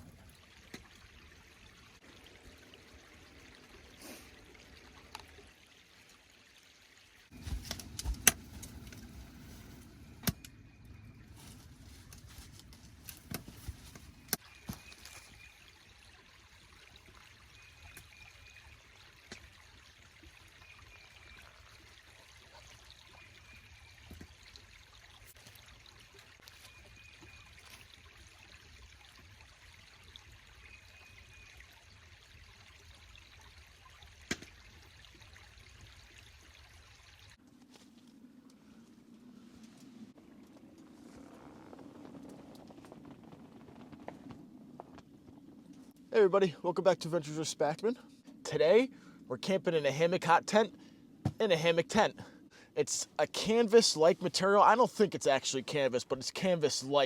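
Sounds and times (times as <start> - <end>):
liquid pouring and trickling: 0.0 - 11.2, 14.4 - 37.4
clicks and knocks from handling gear: 7.3 - 10.6, 11.4 - 15.3.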